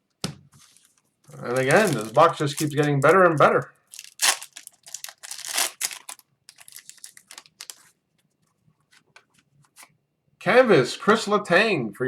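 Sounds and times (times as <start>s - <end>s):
foil wrapper crinkling and tearing: 1.4s - 7.9s.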